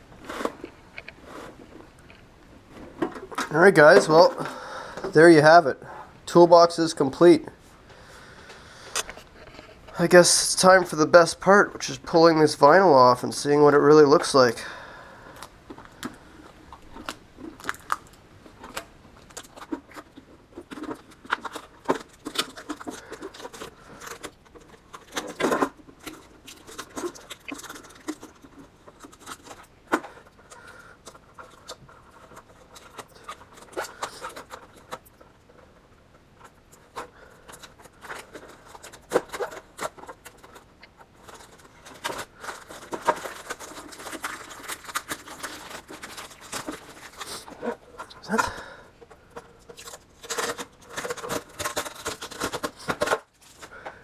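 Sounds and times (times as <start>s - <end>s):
plastic film peeling crackles: 15.3s - 48.4s, 49.0s - 53.8s.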